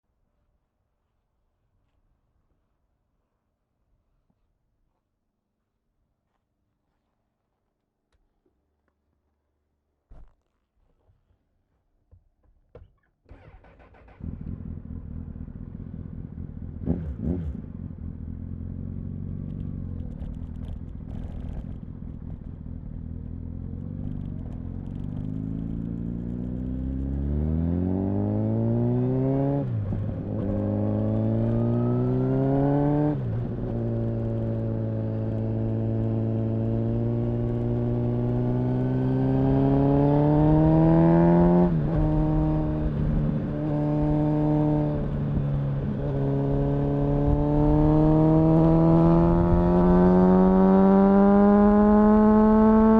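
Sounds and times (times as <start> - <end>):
motorcycle engine revving: 13.3 - 52.9.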